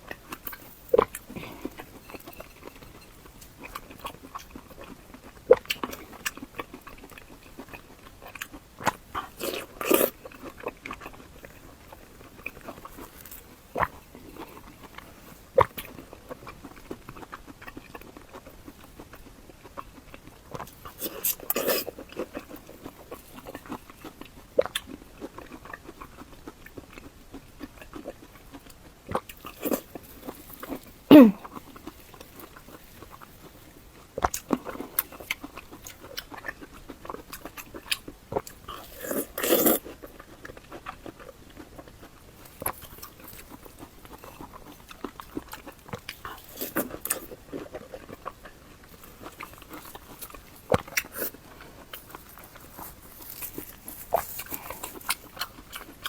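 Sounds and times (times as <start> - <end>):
close-miked chewing: 0.0 - 56.0
noisy slurp: 38.8 - 40.0.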